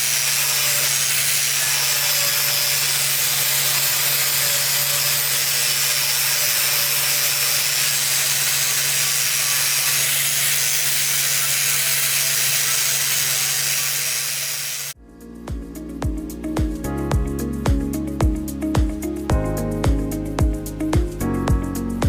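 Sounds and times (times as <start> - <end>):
grinder scraping steel: 0.0 - 15.0
music: 15.0 - 22.0.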